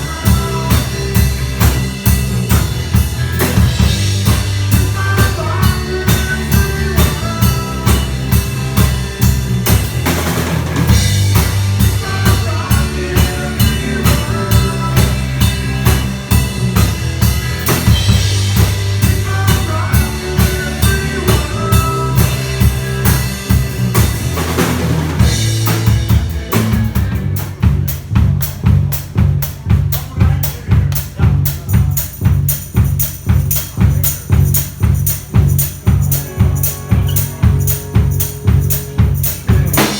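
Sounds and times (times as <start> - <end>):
bass notes: 0.0 - 39.9
drum kit beat: 0.0 - 39.9
live band playing: 0.0 - 39.9
fast cymbal pattern: 31.4 - 39.9.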